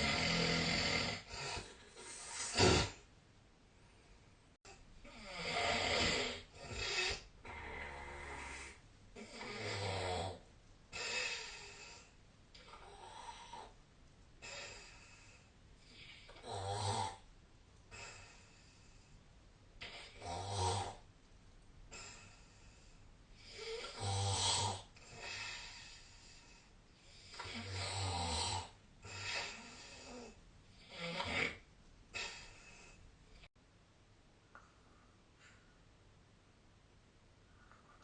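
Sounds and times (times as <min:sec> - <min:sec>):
loud snort: 0:00.0 - 0:03.0, 0:05.1 - 0:10.4, 0:19.8 - 0:21.0, 0:23.6 - 0:25.8, 0:27.4 - 0:32.8
person snoring: 0:00.0 - 0:03.0, 0:05.0 - 0:13.8, 0:15.9 - 0:17.2, 0:19.8 - 0:21.0, 0:23.4 - 0:26.4, 0:27.3 - 0:33.0.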